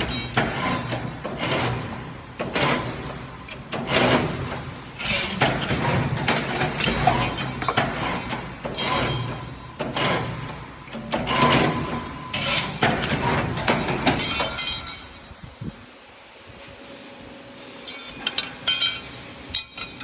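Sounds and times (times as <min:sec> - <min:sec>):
metallic knocks and clanks: 0:00.0 - 0:15.2.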